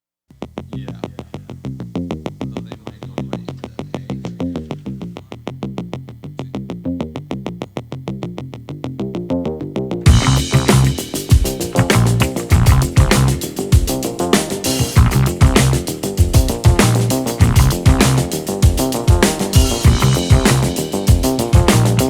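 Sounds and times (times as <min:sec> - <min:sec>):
heavy bass: 0:00.4 - 0:22.0
synthesizer music pulsing notes: 0:09.2 - 0:22.0.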